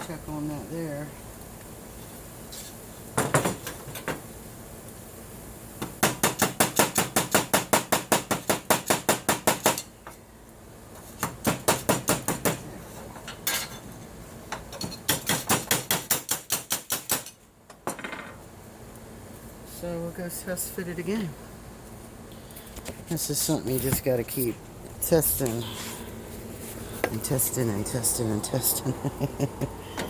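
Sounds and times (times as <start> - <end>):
hammer striking aluminum: 5.8 - 9.9, 11.2 - 12.6, 14.8 - 17.4.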